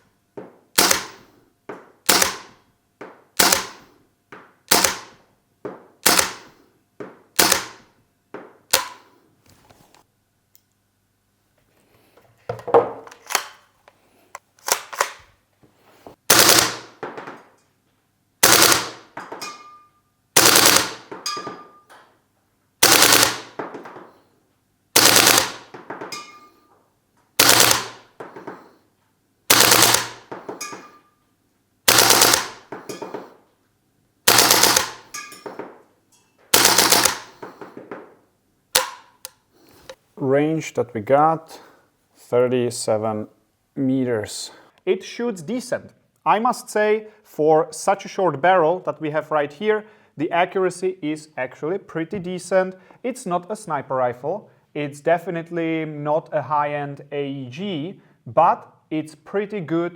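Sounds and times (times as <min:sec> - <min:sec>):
airsoft rifle shots: 0:00.8 - 0:01.2, 0:02.0 - 0:02.6, 0:03.4 - 0:03.9, 0:04.7 - 0:05.2, 0:06.0 - 0:06.6, 0:07.4 - 0:07.8, 0:08.7 - 0:09.1, 0:16.3 - 0:17.4, 0:18.4 - 0:19.6, 0:20.4 - 0:21.5, 0:22.8 - 0:24.0, 0:25.0 - 0:26.3, 0:27.4 - 0:28.1, 0:29.5 - 0:30.9, 0:31.9 - 0:33.1, 0:34.3 - 0:35.1, 0:36.5 - 0:37.7, 0:38.7 - 0:39.2.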